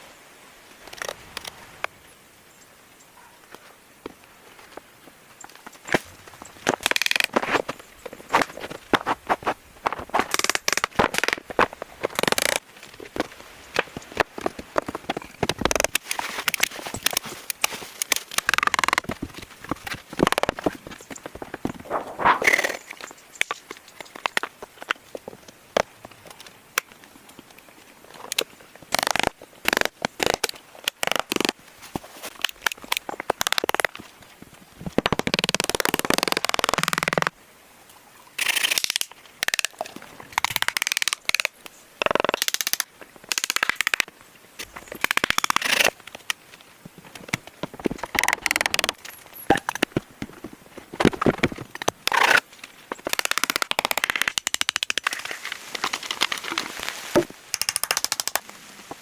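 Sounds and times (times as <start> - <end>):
brush crunching and rustling: 3.5 - 37.3, 38.4 - 59.0
dry branches cracking and snapping: 5.5 - 25.0, 28.2 - 34.0, 38.4 - 50.0, 51.0 - 58.6.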